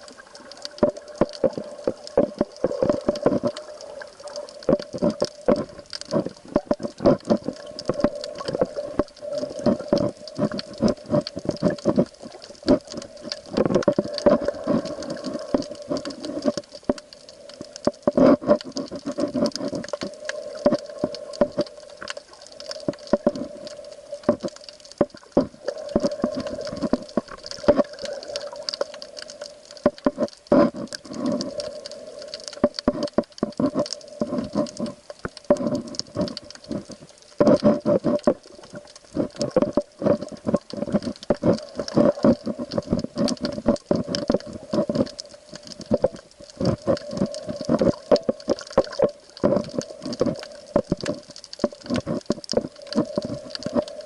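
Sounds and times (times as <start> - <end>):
water sloshing and crackling: 0.0 - 54.0.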